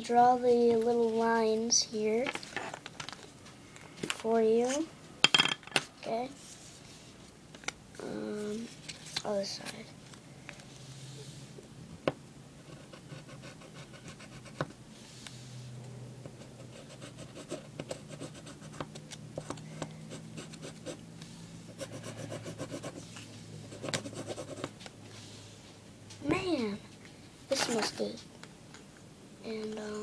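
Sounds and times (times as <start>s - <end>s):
marker scratching on paper: 16.3s - 21.0s, 21.7s - 24.7s.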